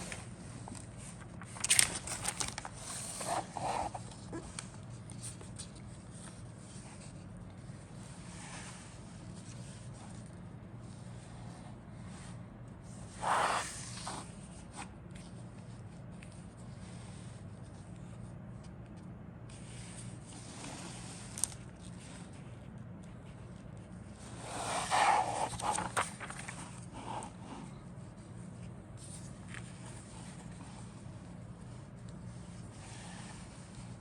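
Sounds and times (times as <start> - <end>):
plastic parts rustling and scraping: 0.0 - 6.4
low steady hum: 0.0 - 34.0.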